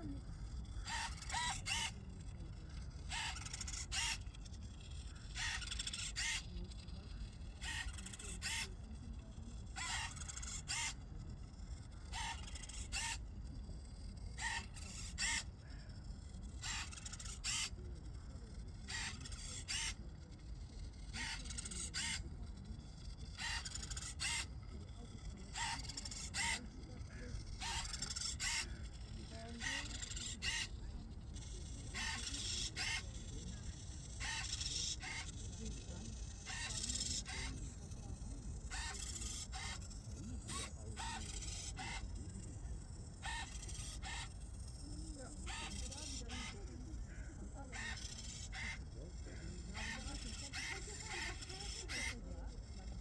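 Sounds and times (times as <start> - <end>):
low steady rumble: 0.0 - 9.8, 26.6 - 53.0
small servo motors whining: 0.0 - 53.0.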